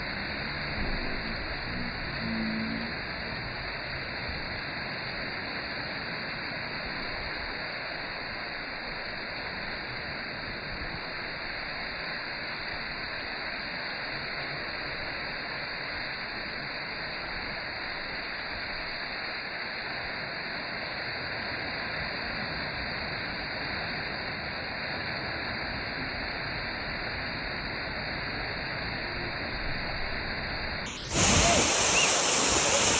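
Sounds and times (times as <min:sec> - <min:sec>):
waterfall rushing: 0:30.9 - 0:32.9.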